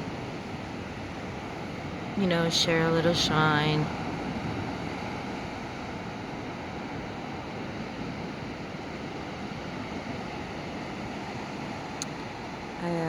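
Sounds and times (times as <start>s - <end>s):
gentle sea surf: 0.0s - 13.0s.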